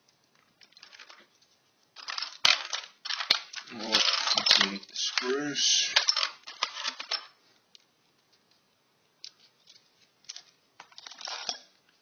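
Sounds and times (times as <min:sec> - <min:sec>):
screws rattling and clinking: 0:00.6 - 0:07.4, 0:09.3 - 0:11.8.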